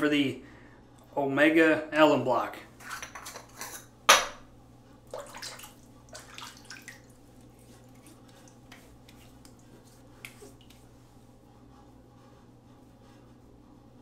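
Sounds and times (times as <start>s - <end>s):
water splashes and drips: 5.1s - 10.8s.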